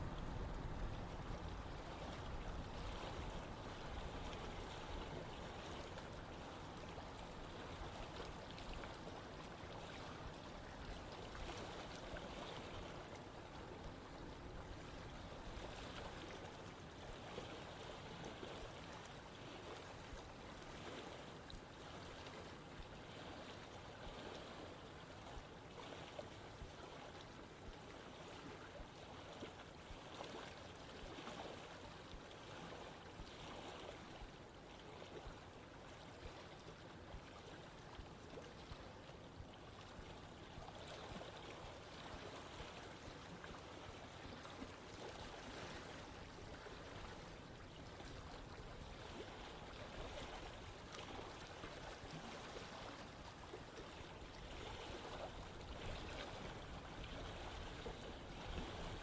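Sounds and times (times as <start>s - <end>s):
stream gurgling over rocks: 30.9s - 59.0s.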